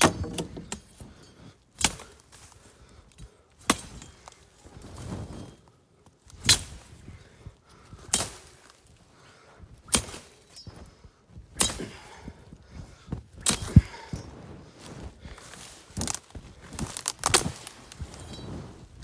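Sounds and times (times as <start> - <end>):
cutting tool chopping stalks: 0.0 - 0.8, 16.8 - 18.0.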